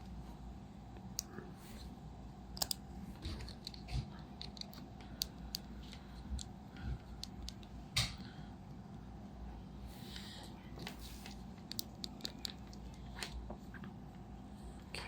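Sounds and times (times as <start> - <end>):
steady low hum: 0.0 - 15.0
small plastic clicks: 11.6 - 13.4.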